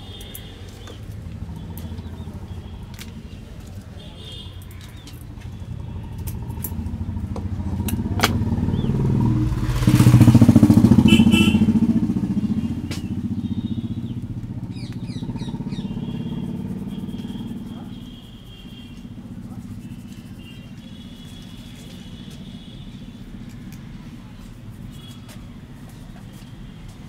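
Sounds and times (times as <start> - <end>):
vehicle engine passing by: 0.6 - 4.2, 4.9 - 27.0.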